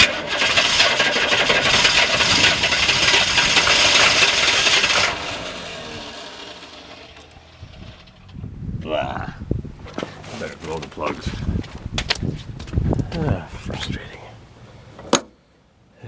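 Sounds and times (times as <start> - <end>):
diesel engine starter cranking: 0.0 - 8.5.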